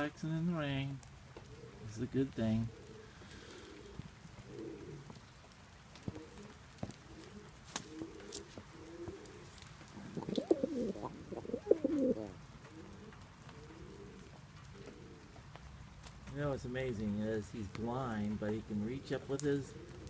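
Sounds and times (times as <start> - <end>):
pigeon cooing: 1.4 - 1.9, 2.6 - 5.2, 6.0 - 15.4, 19.6 - 20.0.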